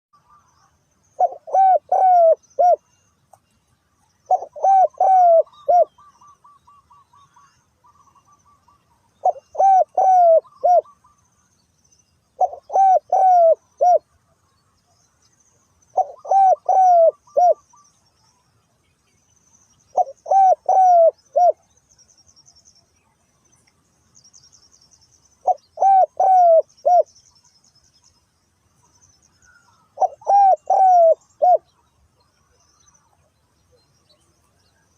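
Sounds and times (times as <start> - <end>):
bird trill: 0.2 - 14.1, 14.9 - 22.9, 24.2 - 28.2, 28.9 - 34.9
small birds chirping: 0.2 - 34.9
dove cooing: 1.2 - 2.9, 4.3 - 8.6, 9.2 - 11.1, 12.4 - 14.0, 16.0 - 17.8, 19.9 - 21.6, 25.4 - 27.1, 29.9 - 31.7.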